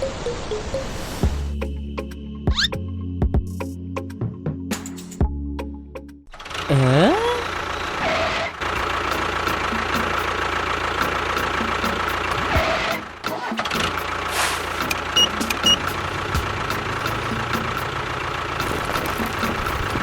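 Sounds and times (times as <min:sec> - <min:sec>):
miniature tractor engine running: 0:06.3 - 0:20.0
short high beeps: 0:15.2 - 0:15.8.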